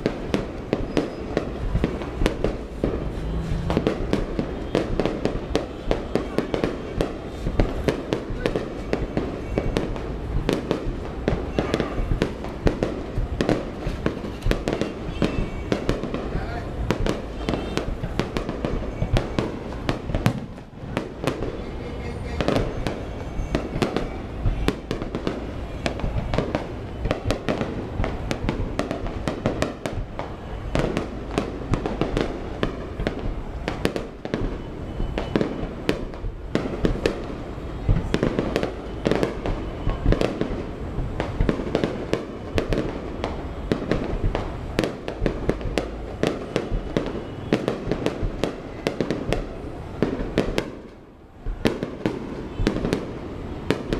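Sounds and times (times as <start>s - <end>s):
fireworks bursting and crackling: 0.0s - 53.9s
low booming: 0.8s - 5.4s.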